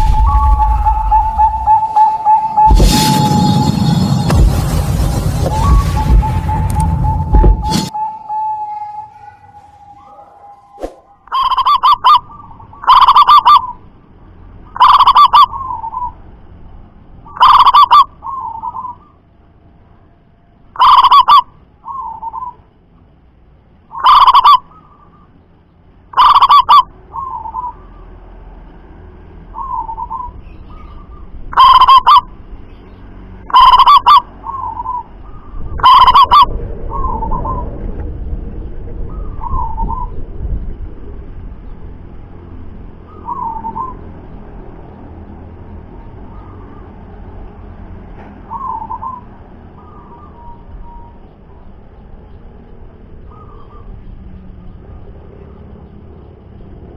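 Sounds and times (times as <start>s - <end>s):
dove cooing loudly: 11.3s - 13.8s, 14.8s - 16.1s, 17.4s - 19.0s, 20.8s - 22.5s, 24.0s - 24.7s, 26.2s - 27.8s, 31.6s - 32.2s, 33.5s - 35.1s, 35.8s - 37.6s.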